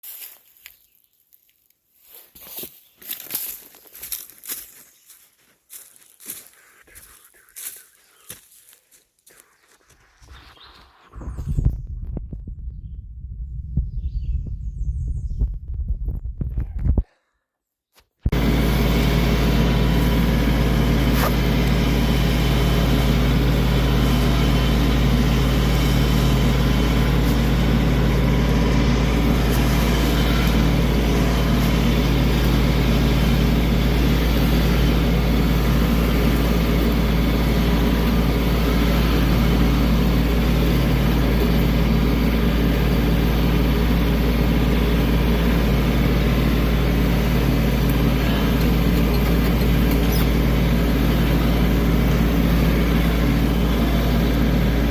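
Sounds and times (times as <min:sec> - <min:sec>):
heavy engine droning: 0:18.3 - 0:54.9.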